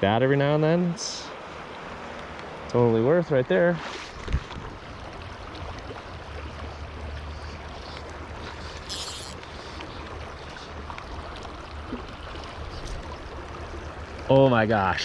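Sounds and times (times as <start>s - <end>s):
wind rumble on microphone: 4.2s - 5.9s
short hiss: 8.8s - 9.4s.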